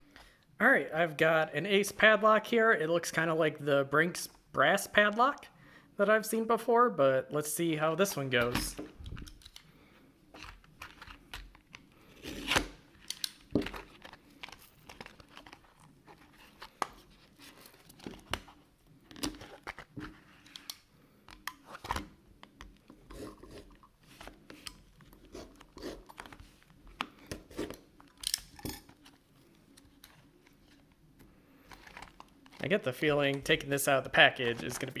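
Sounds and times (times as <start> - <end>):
packaging tearing and crinkling: 10.4 - 18.5.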